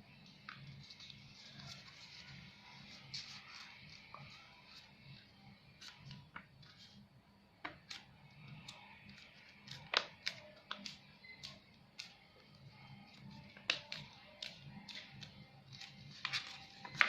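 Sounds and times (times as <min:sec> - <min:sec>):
faint background music: 0:00.0 - 0:17.0
paper crackling: 0:00.3 - 0:05.2, 0:07.9 - 0:12.2, 0:13.1 - 0:17.0.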